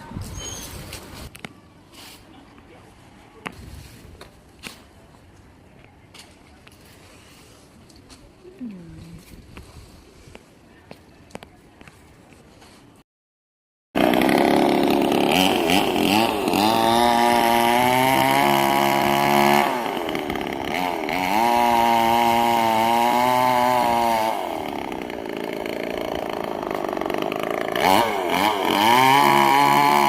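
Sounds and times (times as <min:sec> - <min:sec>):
chainsaw engine revving: 0:14.0 - 0:30.0.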